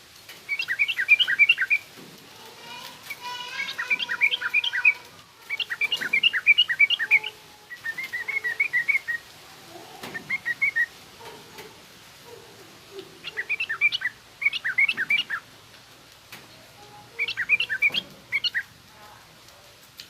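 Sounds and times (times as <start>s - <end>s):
bird chattering chirps: 0.5s - 1.8s, 3.1s - 9.2s, 10.1s - 10.9s, 13.2s - 15.4s, 17.1s - 18.7s.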